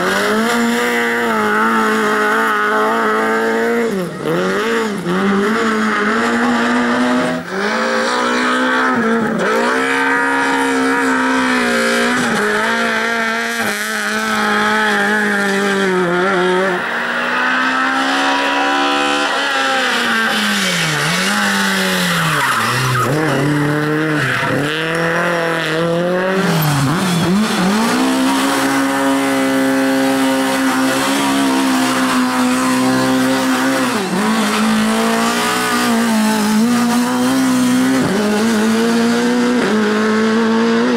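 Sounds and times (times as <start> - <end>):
rally car engines revving: 0.0 - 40.9
tyre squeal: 17.0 - 29.4.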